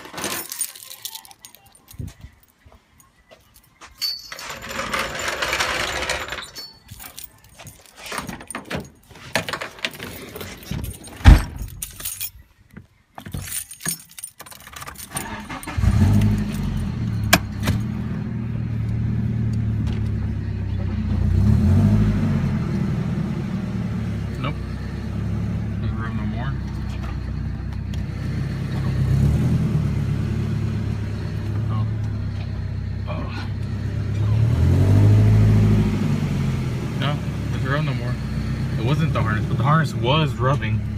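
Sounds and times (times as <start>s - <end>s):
keys jangling: 0.0s - 12.5s, 13.2s - 16.9s
van engine starting and idling: 14.8s - 40.9s.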